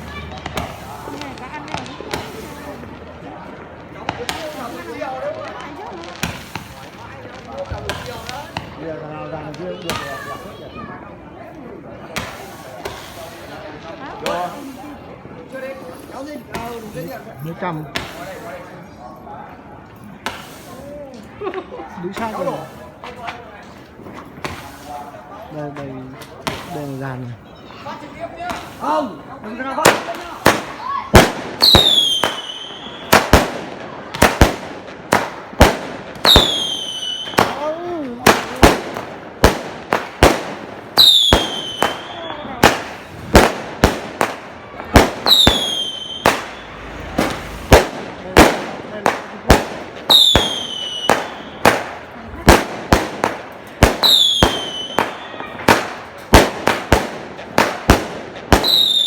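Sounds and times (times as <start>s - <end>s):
fireworks bangs: 0.0s - 59.0s
whistling firework shells: 30.1s - 33.4s, 36.2s - 37.6s, 41.0s - 43.2s, 44.8s - 47.9s, 50.0s - 52.0s, 53.9s - 56.0s, 58.5s - 59.0s.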